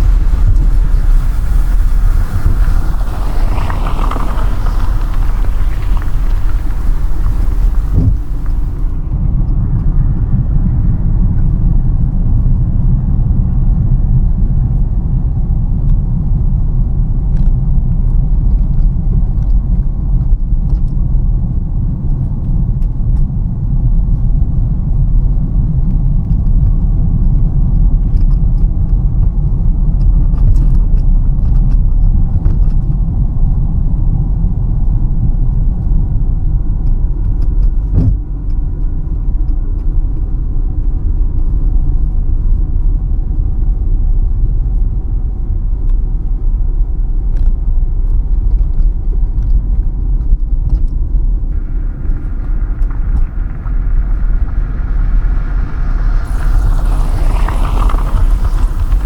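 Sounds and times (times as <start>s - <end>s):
higher hiss: 0.0s - 9.0s, 51.6s - 59.0s
car engine and tyres rumbling: 0.0s - 10.3s, 51.1s - 59.0s.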